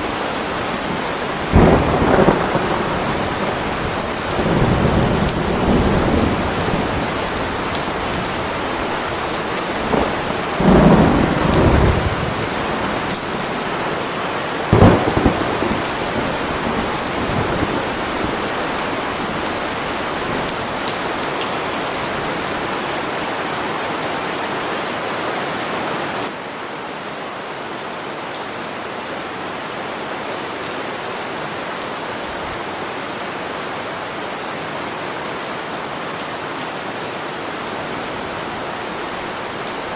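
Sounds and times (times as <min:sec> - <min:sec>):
thunder rumbling: 0:00.0 - 0:13.8, 0:14.7 - 0:21.0
heavy rain: 0:00.0 - 0:39.9
sharp crack of thunder: 0:01.5 - 0:07.6, 0:09.8 - 0:13.6, 0:14.7 - 0:18.8.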